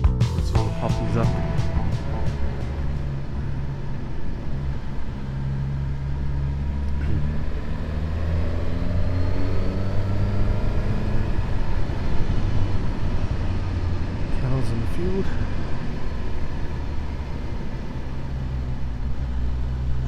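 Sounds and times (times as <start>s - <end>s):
motorcycle engine accelerating: 0.0s - 14.3s.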